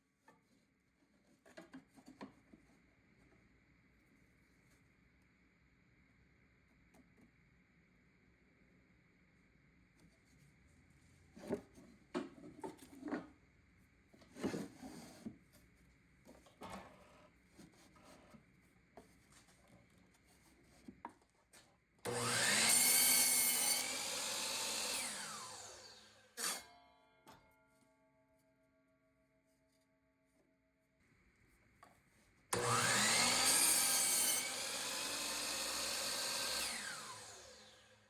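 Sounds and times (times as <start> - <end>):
cordless drill running: 22.1 - 26.1, 32.6 - 37.9.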